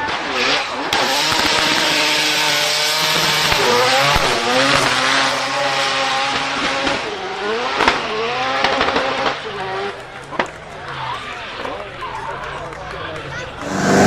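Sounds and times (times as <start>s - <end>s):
car engine revving: 0.3s - 10.0s, 13.6s - 14.0s.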